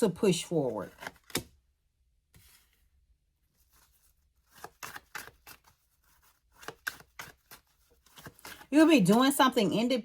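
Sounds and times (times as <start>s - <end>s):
cards shuffling and flicking: 4.4s - 9.2s.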